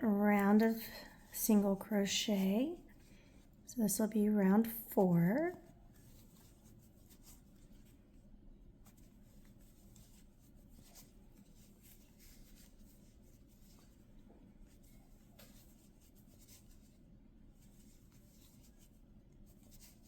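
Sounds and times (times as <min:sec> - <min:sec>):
low room hum: 0:00.0 - 0:20.0
soft yarn rustling: 0:00.0 - 0:20.0.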